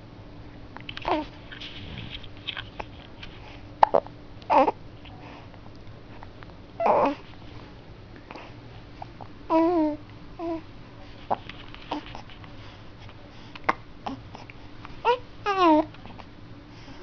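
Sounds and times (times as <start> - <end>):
baby cooing and grunting: 3.9 - 4.8, 6.8 - 7.2, 9.5 - 10.6, 15.0 - 15.9.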